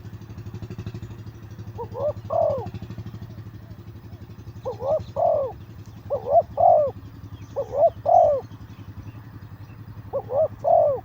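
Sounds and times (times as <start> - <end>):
steady low hum: 1.3 - 9.2
dove cooing: 1.7 - 3.8, 4.6 - 8.6, 10.0 - 11.0.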